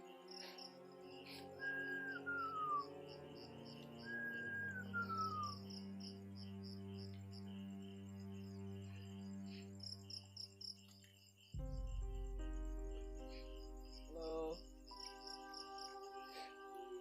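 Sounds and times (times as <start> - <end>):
droning background music: 0.0 - 10.7, 11.6 - 17.0
crickets chirping: 0.0 - 17.0
whistle-like tone sliding down: 1.6 - 3.0, 4.0 - 5.6.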